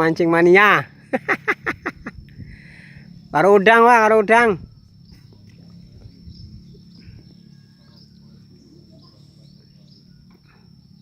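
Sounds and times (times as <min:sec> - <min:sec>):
high insect drone: 0:00.0 - 0:11.0
low hum: 0:00.0 - 0:11.0
bird chirps: 0:04.6 - 0:11.0.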